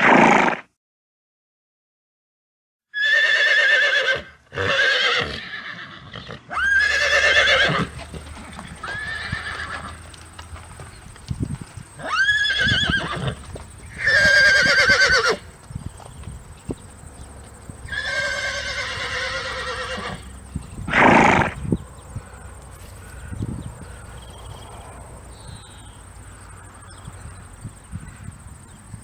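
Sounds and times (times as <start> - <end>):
horse breathy blast: 0.0 - 0.7, 20.2 - 25.2
horse whinnying: 0.0 - 0.7, 3.0 - 10.1, 12.0 - 15.5, 17.8 - 20.3, 20.9 - 21.6.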